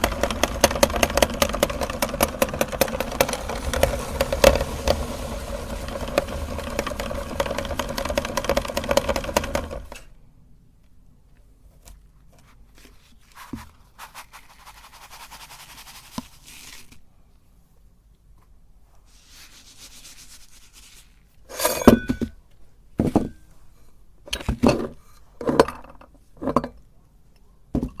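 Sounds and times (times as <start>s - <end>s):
meat grinder motor running: 0.0s - 10.0s
quiet scraping and rubbing: 11.5s - 21.8s
utensils clinking and knocking: 21.5s - 22.4s.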